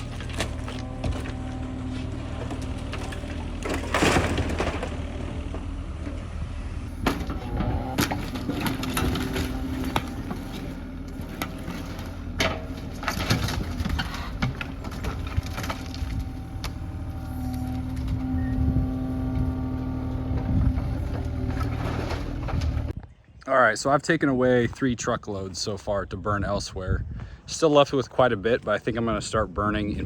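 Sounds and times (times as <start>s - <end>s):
timber cracking and crashing: 0.0s - 5.7s, 7.0s - 17.0s
machine engine running: 0.0s - 22.9s.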